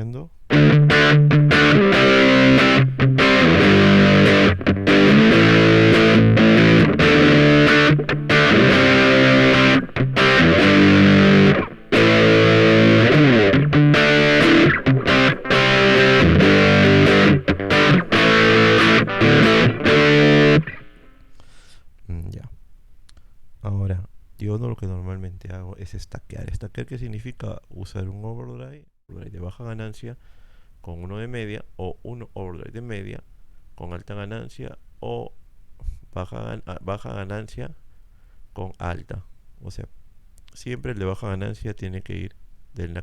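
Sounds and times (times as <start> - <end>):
distorted electric guitar: 0.5 - 21.3.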